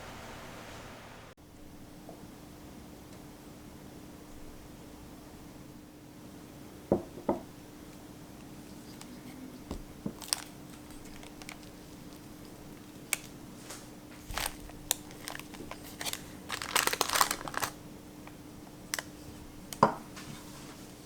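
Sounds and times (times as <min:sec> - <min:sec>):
crinkly wrapping rustling: 0:08.4 - 0:21.0.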